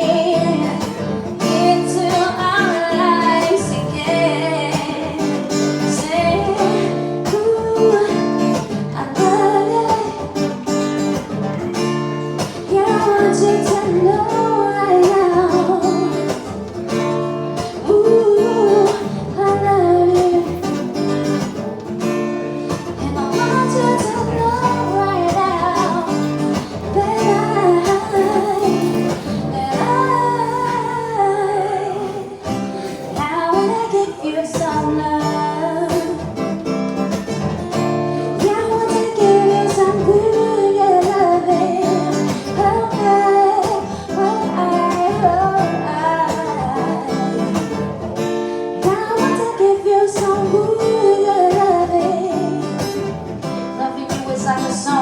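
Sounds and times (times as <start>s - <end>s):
person singing: 0.0s - 10.6s, 11.2s - 16.5s, 22.7s - 36.5s, 37.2s - 48.0s
acoustic guitar strumming: 0.0s - 55.0s.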